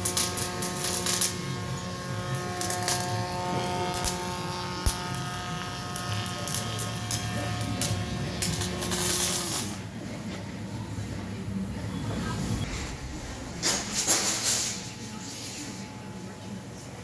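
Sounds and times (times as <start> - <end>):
sharp crackles: 0.0 - 9.8
electrical buzz with held tones: 0.0 - 17.0.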